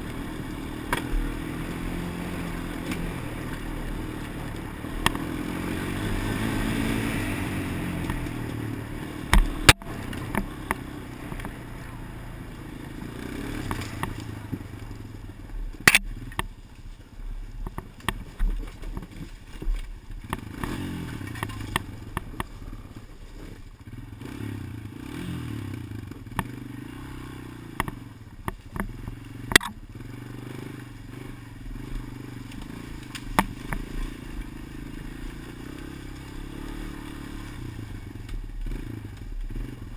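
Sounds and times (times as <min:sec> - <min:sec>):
atv engine running: 0:00.0 - 0:39.9
sharp clicks and knocks: 0:09.3 - 0:11.6, 0:15.8 - 0:16.5, 0:27.8 - 0:29.8.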